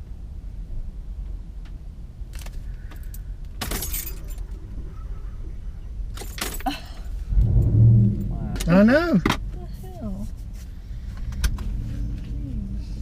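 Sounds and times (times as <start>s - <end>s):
low steady rumble: 0.0s - 13.0s
keys jingling: 3.0s - 4.5s.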